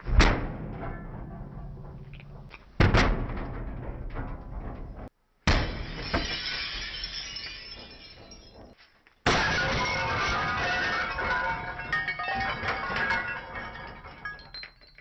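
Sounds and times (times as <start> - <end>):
glass and plastic shattering: 5.5 - 15.0.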